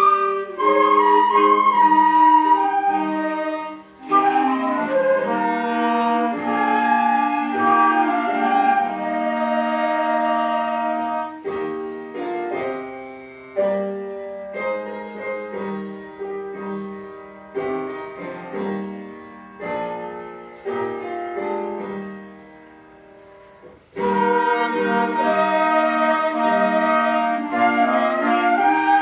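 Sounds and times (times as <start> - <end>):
ensemble playing slow hymn: 0.0 - 11.4
piano chords: 0.0 - 29.0.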